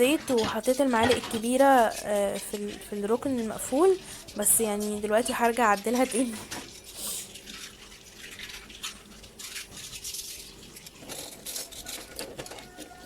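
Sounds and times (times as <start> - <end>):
metal spoons clattering: 0.0 - 8.8.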